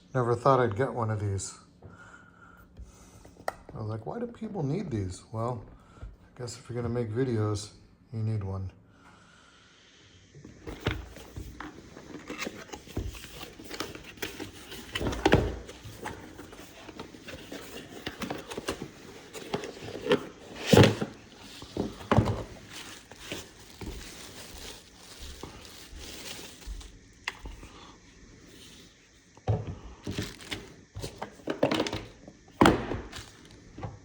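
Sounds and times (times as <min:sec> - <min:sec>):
packaging rustling and clicking: 0:10.5 - 0:27.6, 0:30.0 - 0:33.8.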